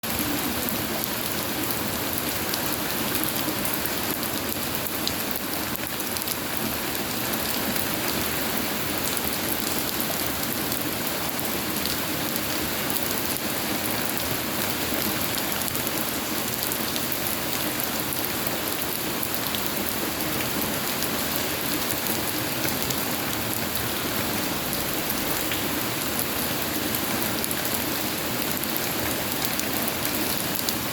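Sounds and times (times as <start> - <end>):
rain pattering: 0.0 - 30.9.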